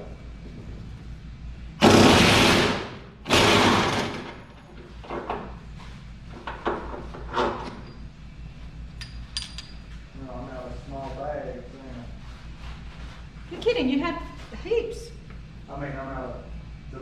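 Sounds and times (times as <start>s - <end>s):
impact wrench bursts: 1.8s - 4.4s.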